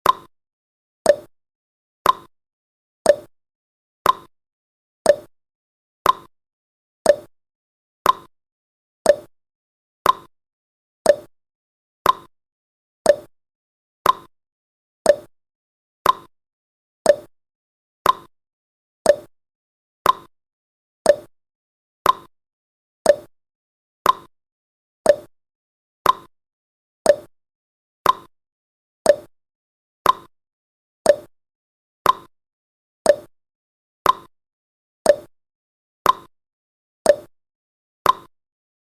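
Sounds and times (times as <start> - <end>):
clock ticking: 1.1 - 1.3, 3.1 - 3.3, 4.0 - 4.3, 5.1 - 5.3, 6.0 - 6.3, 7.1 - 7.3, 8.0 - 8.3, 9.1 - 9.3, 10.0 - 10.3, 11.1 - 11.3, 12.0 - 12.3, 13.1 - 13.3, 14.0 - 14.3, 15.1 - 15.3, 16.0 - 16.3, 17.1 - 17.3, 18.0 - 18.3, 19.1 - 19.3, 20.0 - 20.3, 21.1 - 21.3, 22.0 - 22.3, 23.1 - 23.3, 24.0 - 24.3, 25.1 - 25.3, 26.1 - 26.3, 27.1 - 27.3, 28.1 - 28.3, 29.1 - 29.3, 30.1 - 30.3, 31.1 - 31.3, 32.1 - 32.3, 33.1 - 33.3, 34.1 - 34.3, 35.1 - 35.3, 36.1 - 36.3, 37.1 - 37.3, 38.1 - 38.3.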